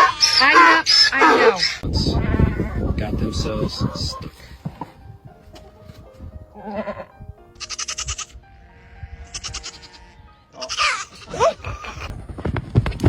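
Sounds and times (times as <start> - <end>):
goats bleating: 0.0 - 2.9, 6.6 - 12.1
background music with held notes: 2.8 - 13.0.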